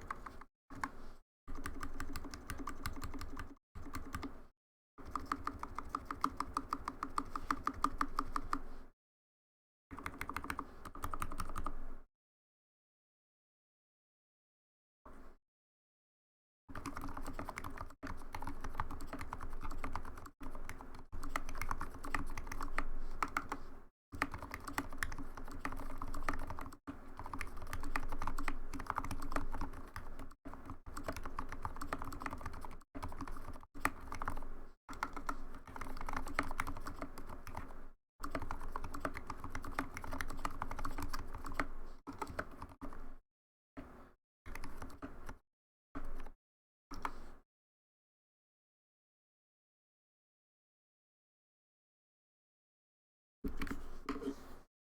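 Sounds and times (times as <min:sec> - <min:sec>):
mechanical keyboard typing: 0:00.0 - 0:04.4, 0:05.0 - 0:08.6, 0:10.0 - 0:11.7, 0:16.7 - 0:23.6, 0:24.2 - 0:43.1, 0:44.5 - 0:45.4.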